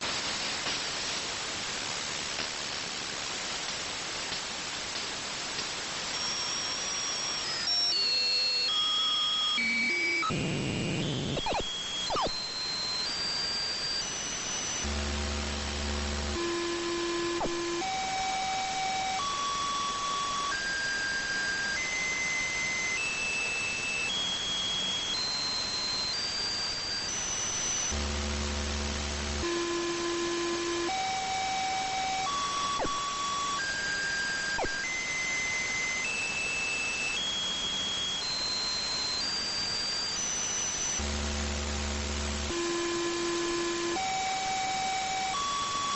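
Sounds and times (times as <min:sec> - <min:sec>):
tones stepping upward in pitch: 0:09.6 - 0:12.5.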